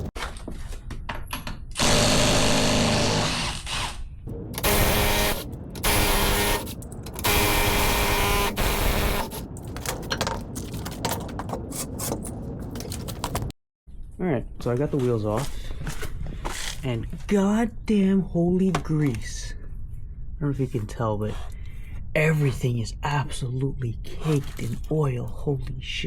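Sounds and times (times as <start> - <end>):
impact wrench buzzing: 1.8 - 4.0, 4.6 - 9.4.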